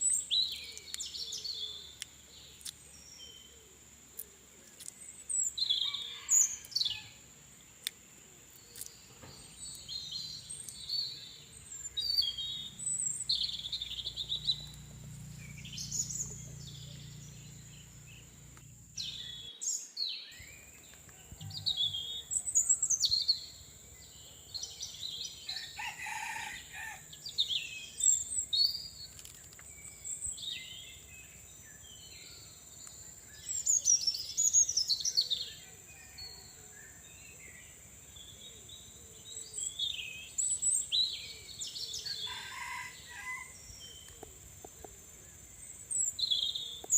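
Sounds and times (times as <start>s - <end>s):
longer lower bird call: 0.0s - 7.2s
birds chirping: 0.0s - 46.9s.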